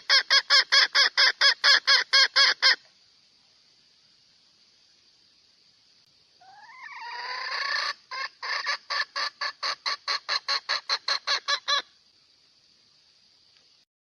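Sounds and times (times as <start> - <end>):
hen rising call: 6.4 - 11.8
hen clucking: 6.4 - 11.9.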